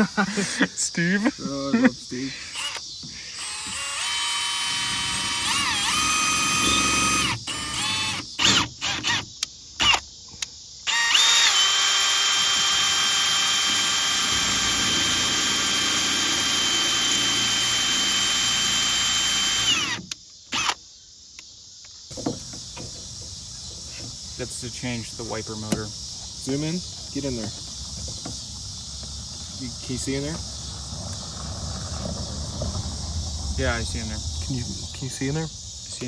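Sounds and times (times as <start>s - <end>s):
power drill whining: 2.4s - 10.0s, 10.9s - 20.8s.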